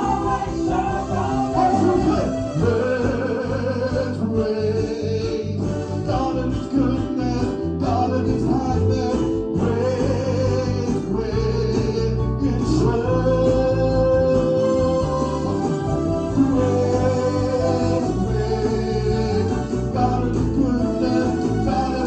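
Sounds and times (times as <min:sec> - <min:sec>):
band accompaniment: 0:00.0 - 0:22.0
person singing: 0:00.0 - 0:22.0.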